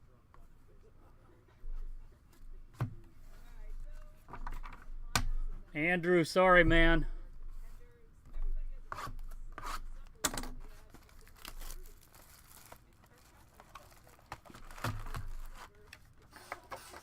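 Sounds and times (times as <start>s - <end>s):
wrapper crinkling and tearing: 10.8s - 16.0s.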